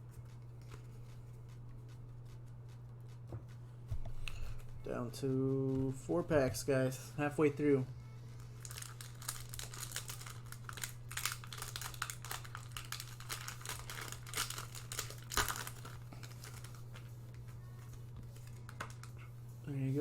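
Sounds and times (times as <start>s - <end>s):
steady low hum: 0.0s - 20.0s
foil wrapper crinkling: 8.4s - 17.4s, 18.4s - 19.2s
foil wrapper ripping: 8.5s - 17.1s, 18.4s - 19.2s.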